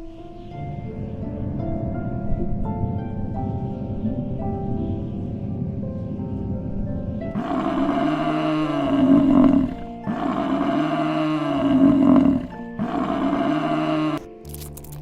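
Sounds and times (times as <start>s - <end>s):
soft background music: 0.0s - 15.0s
large animal roaring: 7.4s - 14.3s.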